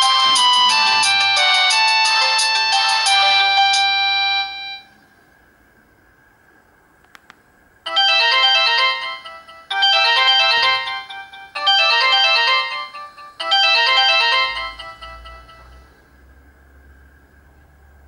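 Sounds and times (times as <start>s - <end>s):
mobile phone ringtone melody: 0.0s - 5.0s, 7.9s - 15.9s.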